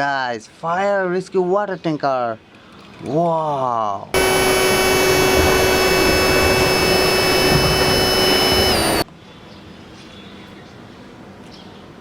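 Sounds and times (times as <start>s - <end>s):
machine whine with rushing hiss: 4.2s - 9.0s.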